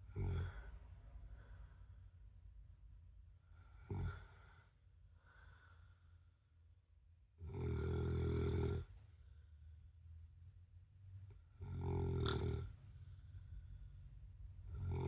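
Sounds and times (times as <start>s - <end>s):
man snoring: 0.0s - 0.7s, 3.8s - 4.6s, 7.4s - 8.9s, 11.6s - 12.8s, 14.7s - 15.0s
quiet breathing: 0.0s - 15.0s.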